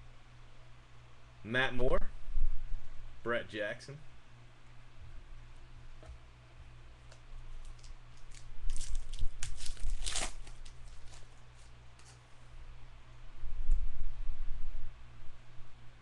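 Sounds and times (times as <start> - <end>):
steady low hum: 0.0 - 16.0
wrapper tearing and crinkling: 7.6 - 12.2.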